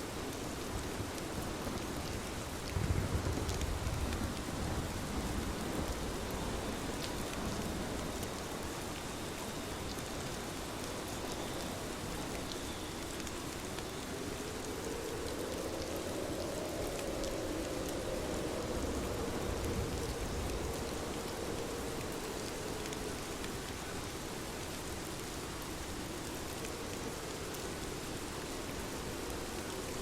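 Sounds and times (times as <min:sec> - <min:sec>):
steady rain hissing: 0:00.0 - 0:30.0
raindrop ticks: 0:00.3 - 0:23.9.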